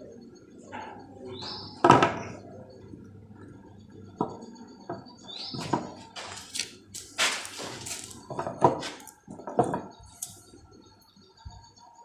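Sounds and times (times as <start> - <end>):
hard objects knocking: 4.2 - 6.1, 7.6 - 10.0.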